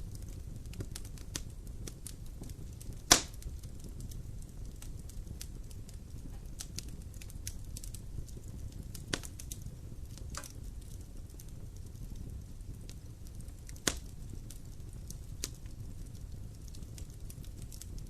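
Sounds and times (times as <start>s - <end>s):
fire crackling and popping: 0.0s - 18.0s
fire flames rumbling: 0.0s - 18.0s.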